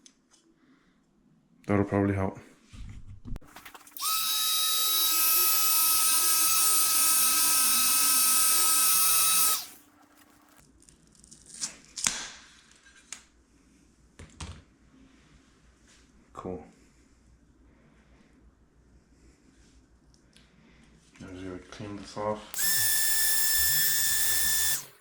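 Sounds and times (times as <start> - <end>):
heat gun running: 3.8 - 9.8, 22.6 - 25.0.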